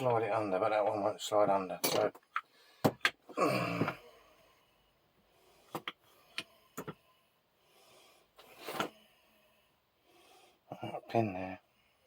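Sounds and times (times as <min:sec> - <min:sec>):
metal tools clicking and knocking: 0:01.8 - 0:03.2.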